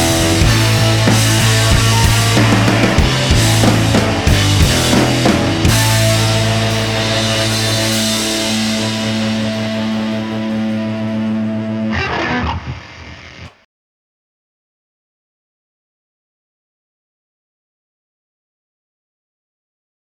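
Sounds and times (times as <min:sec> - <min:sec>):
guitar chord ringing: 0:00.0 - 0:12.9
rock music: 0:00.0 - 0:13.5.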